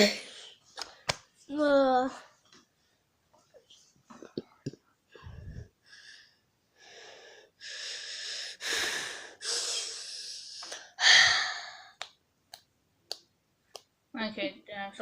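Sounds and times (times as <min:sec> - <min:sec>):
person breathing out hard: 0:05.2 - 0:12.0.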